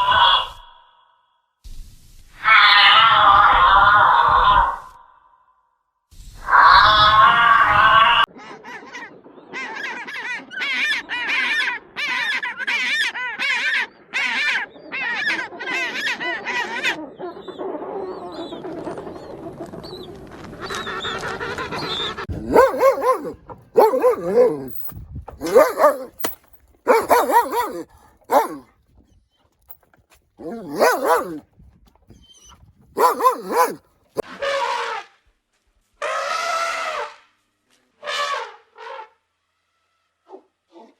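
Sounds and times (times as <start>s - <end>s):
dog barking: 22.3s - 24.8s, 25.4s - 28.6s, 30.4s - 31.4s, 33.0s - 33.8s.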